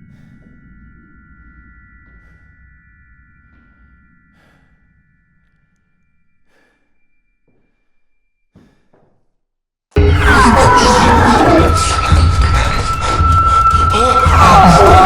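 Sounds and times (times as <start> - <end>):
faint breathing: 0.0 - 0.8, 4.2 - 5.2, 6.4 - 9.0
high held tone: 10.0 - 15.0.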